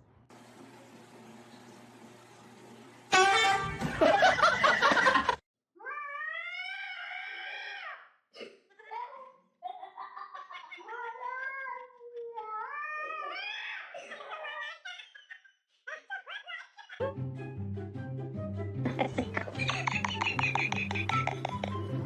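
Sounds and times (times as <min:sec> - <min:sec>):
cat yowling: 0:05.8 - 0:08.0.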